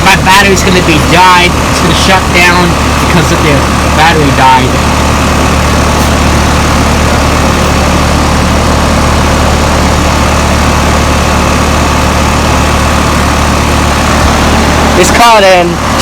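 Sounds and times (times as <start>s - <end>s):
compressor low hum: 0.0s - 16.0s
fan rush of air: 0.0s - 16.0s.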